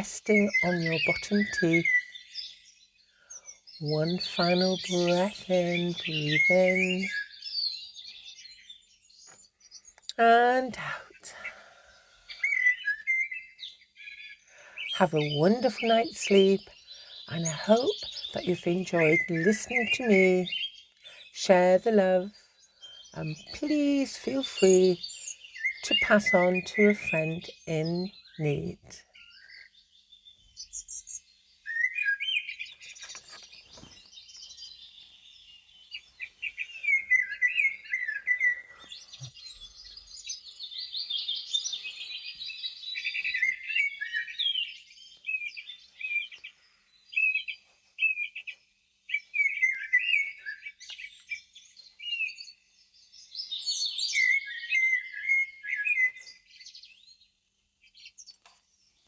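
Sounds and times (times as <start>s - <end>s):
birds chirping and twittering: 0.0s - 59.0s.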